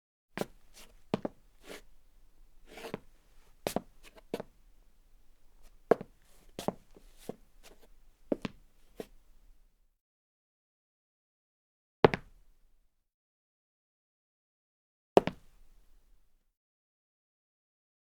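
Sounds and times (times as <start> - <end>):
footsteps on wooden floor: 0.4 - 4.5, 5.5 - 8.6
shoe scuffs: 0.4 - 9.3.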